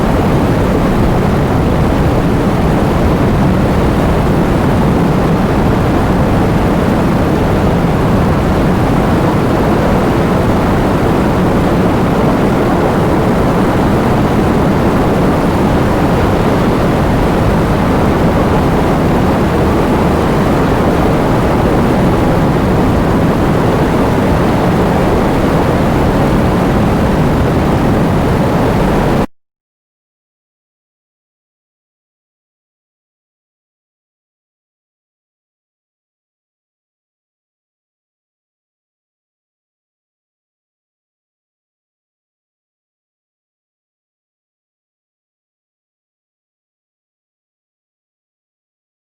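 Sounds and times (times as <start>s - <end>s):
heavy rain: 0.0s - 29.3s
strong wind: 0.0s - 29.3s.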